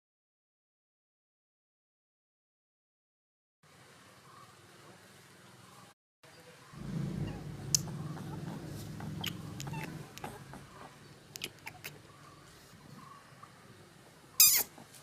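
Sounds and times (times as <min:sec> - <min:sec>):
rabbit rumbling vocalisation: 0:06.8 - 0:15.0
sharp little clicks: 0:11.3 - 0:12.0.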